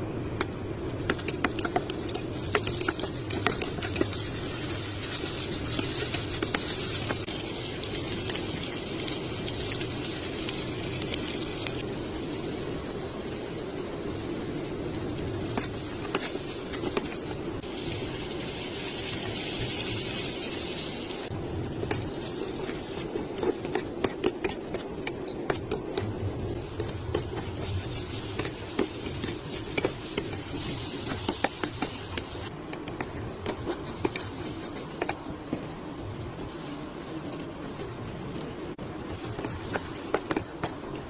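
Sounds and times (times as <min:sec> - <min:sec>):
food sizzling: 0:00.7 - 0:24.5, 0:25.6 - 0:37.1.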